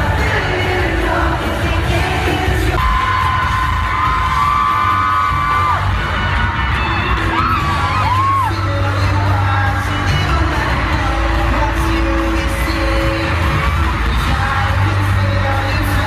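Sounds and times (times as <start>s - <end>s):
live pop-rock band playing: 0.0s - 16.0s.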